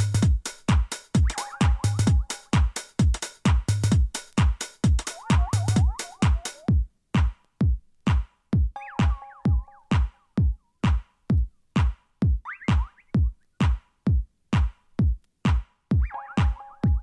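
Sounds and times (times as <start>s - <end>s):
drum machine kick drum: 0.0s - 17.0s
chirping synth phrases: 1.2s - 2.5s, 5.0s - 6.7s.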